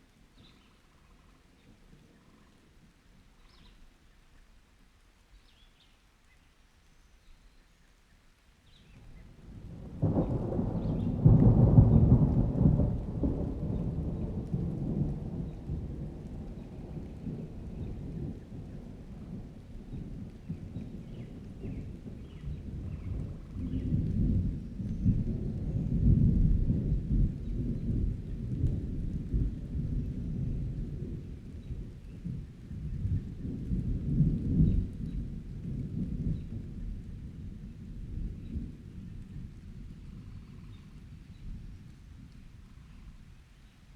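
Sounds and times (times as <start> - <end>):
rain: 0.0 - 43.9
thunder rumbling: 9.1 - 43.2.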